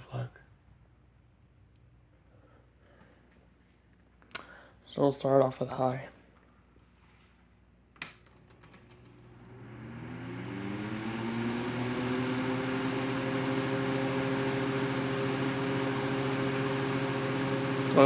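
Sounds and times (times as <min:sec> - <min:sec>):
fan motor humming and blowing: 0:08.6 - 0:18.0.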